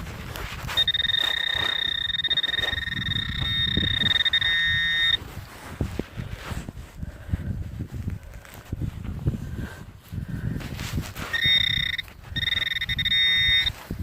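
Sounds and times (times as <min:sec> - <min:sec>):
metal detector buzzing tone: 0:00.8 - 0:05.2, 0:11.3 - 0:13.8.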